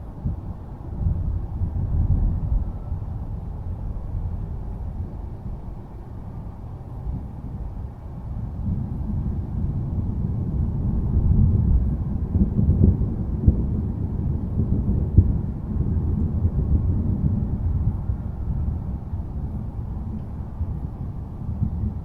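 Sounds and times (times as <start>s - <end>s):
thunder rumbling: 0.2s - 22.0s.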